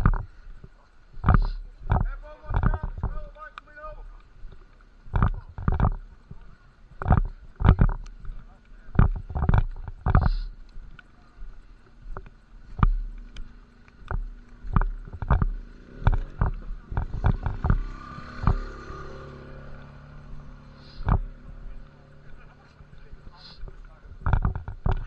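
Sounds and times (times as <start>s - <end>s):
knocks and thumps: 0.0s - 0.3s, 1.2s - 3.4s, 5.1s - 6.1s, 7.0s - 10.6s, 12.1s - 13.2s, 14.0s - 19.0s, 21.0s - 21.6s, 23.6s - 25.0s.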